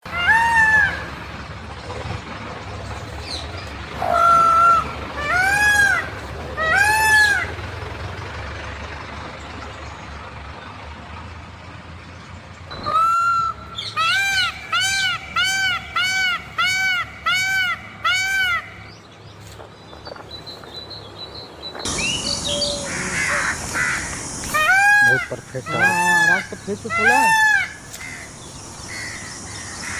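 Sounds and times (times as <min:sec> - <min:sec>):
peacock honking calls: 0:00.1 - 0:01.4, 0:03.3 - 0:08.3, 0:12.7 - 0:18.9, 0:21.9 - 0:29.9
steady low hum: 0:21.4 - 0:29.9.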